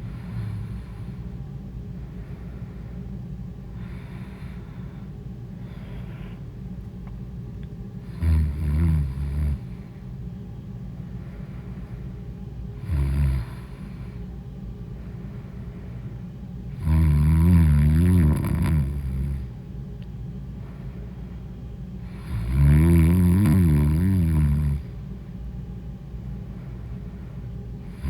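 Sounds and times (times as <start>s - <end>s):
woman snoring: 8.0s - 9.7s, 12.8s - 14.2s, 16.7s - 19.5s, 22.1s - 24.9s.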